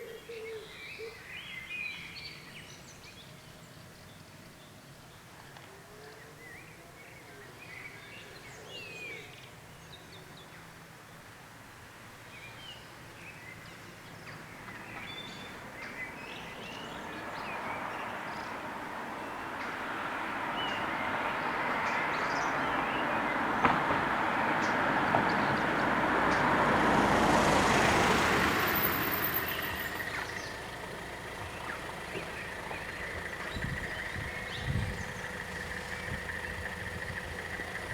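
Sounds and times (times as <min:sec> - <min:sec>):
birds chirping: 0:12.2 - 0:37.9
diesel railcar rumbling: 0:13.7 - 0:37.9.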